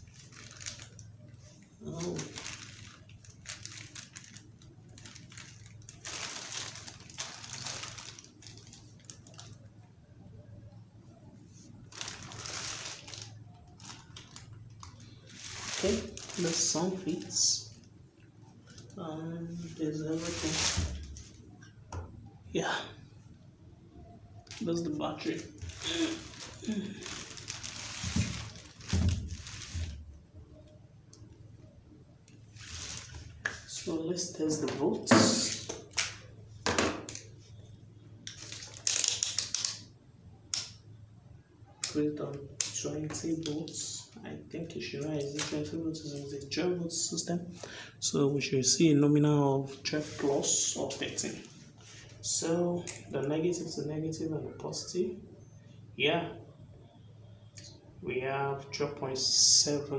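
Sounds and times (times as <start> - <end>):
rustling and scraping: 11.4 - 17.4, 19.6 - 21.5, 25.3 - 30.2, 32.4 - 33.9, 49.7 - 52.2
cardboard rustling and scraping: 20.0 - 21.4, 25.6 - 30.1, 32.5 - 33.4.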